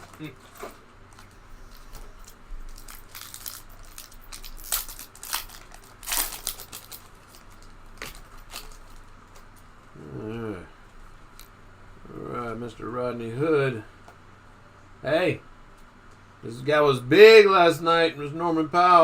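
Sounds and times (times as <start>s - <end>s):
card pack wrapper crinkling: 1.2s - 9.4s.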